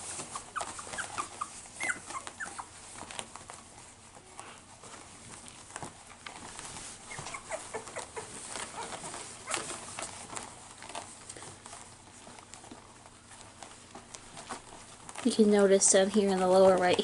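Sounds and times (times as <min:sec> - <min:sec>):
puppies squeaking and whimpering: 0:00.0 - 0:03.6, 0:05.4 - 0:15.2
light scuffling: 0:00.0 - 0:17.0.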